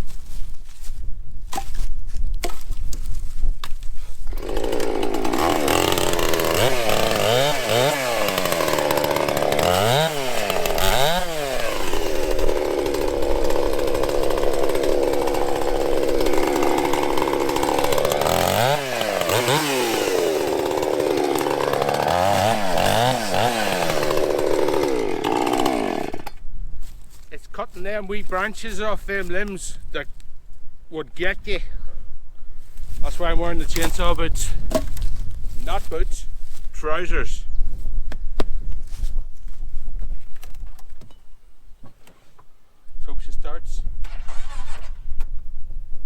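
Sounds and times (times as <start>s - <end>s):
chainsaw revving and cutting: 4.3s - 26.4s.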